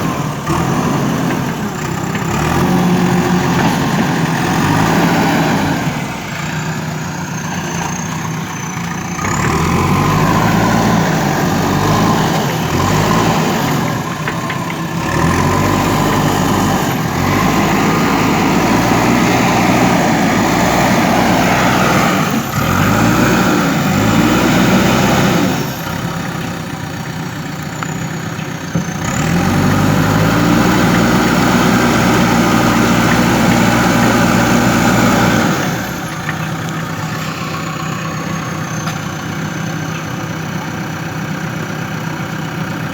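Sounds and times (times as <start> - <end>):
diesel engine revving: 0.0 - 42.9.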